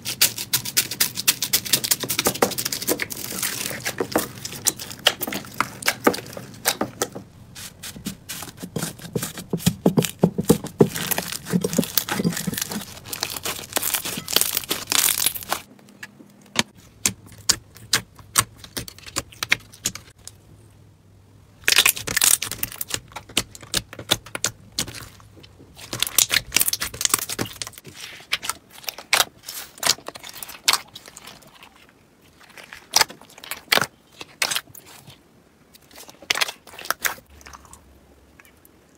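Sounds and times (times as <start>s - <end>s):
slime crackling and popping: 0.1s - 7.0s, 7.6s - 15.7s, 21.6s - 25.1s, 25.8s - 27.8s.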